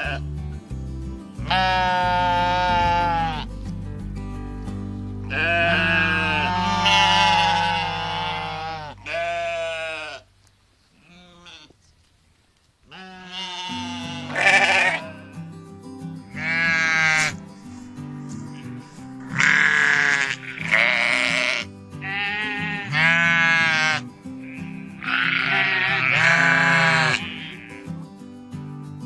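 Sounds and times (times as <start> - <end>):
sheep bleating: 0.0 - 0.2, 1.4 - 3.5, 5.3 - 10.3, 11.0 - 11.7, 12.9 - 15.4, 16.4 - 17.4, 18.4 - 27.9
background music with low notes: 0.0 - 9.6, 13.6 - 29.0.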